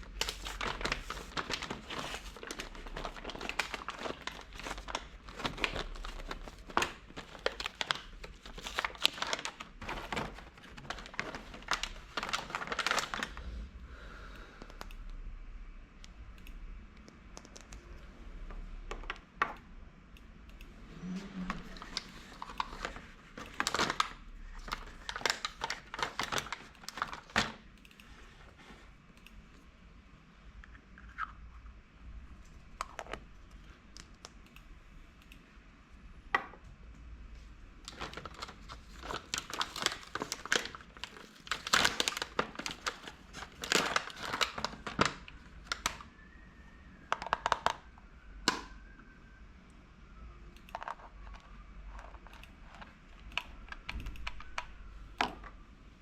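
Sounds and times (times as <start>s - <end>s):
packaging crinkling and tearing: 0.0s - 13.4s, 21.4s - 27.6s, 37.9s - 46.1s
scattered clicks: 14.6s - 15.2s, 18.9s - 20.8s, 27.7s - 28.1s.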